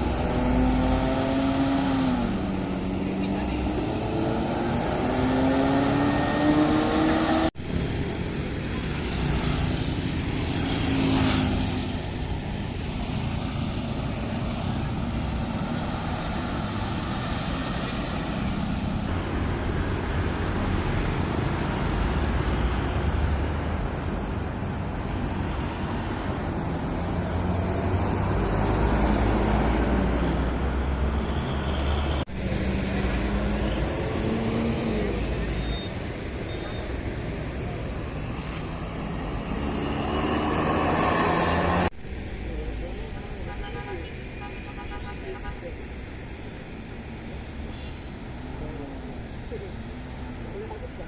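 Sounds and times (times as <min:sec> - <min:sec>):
buses and cars passing: 0:00.0 - 0:51.0.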